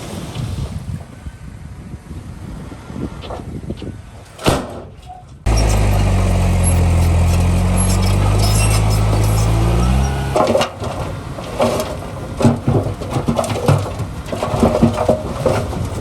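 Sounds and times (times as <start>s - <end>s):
quiet rumble: 5.5s - 10.4s
heavy diesel engine running: 5.5s - 10.6s.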